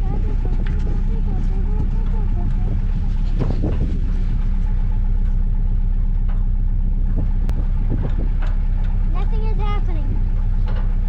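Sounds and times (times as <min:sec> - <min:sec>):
vehicle engine idling: 0:00.0 - 0:11.0
short knocks and clatters: 0:10.4 - 0:11.0.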